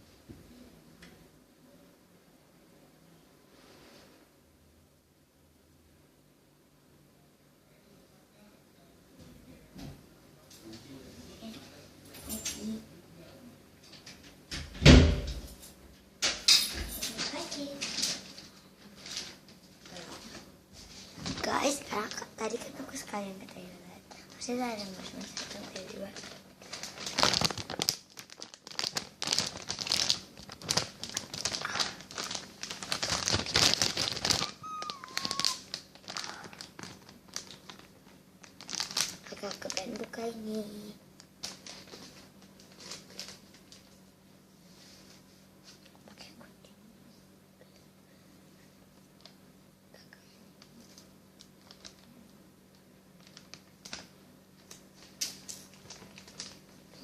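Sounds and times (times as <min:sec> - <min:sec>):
plastic package crinkling: 0:23.4 - 0:40.4, 0:41.2 - 0:44.0, 0:50.7 - 0:57.0.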